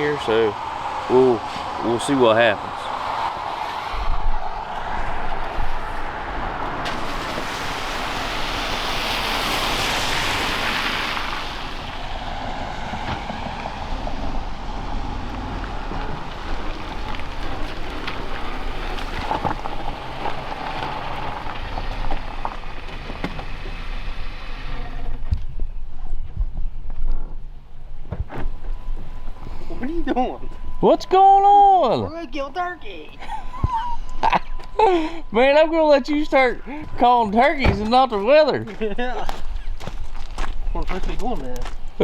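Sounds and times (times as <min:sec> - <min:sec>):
vehicle hissing past on wet road: 0:00.0 - 0:19.2
low traffic rumble: 0:00.0 - 0:42.0.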